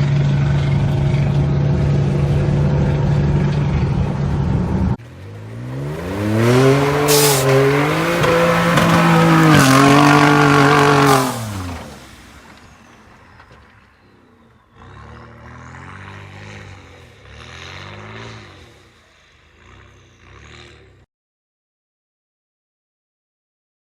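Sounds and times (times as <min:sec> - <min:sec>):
truck engine accelerating: 0:00.0 - 0:21.1
high turbo whistle: 0:06.4 - 0:12.0.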